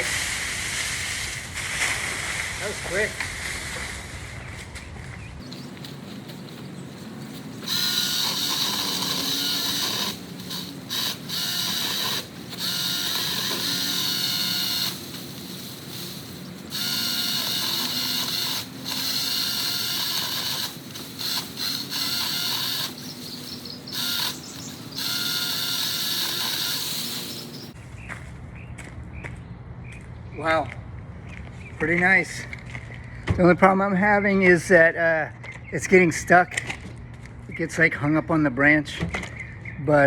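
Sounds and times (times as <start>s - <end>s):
electric chainsaw whining: 5.6s - 27.8s.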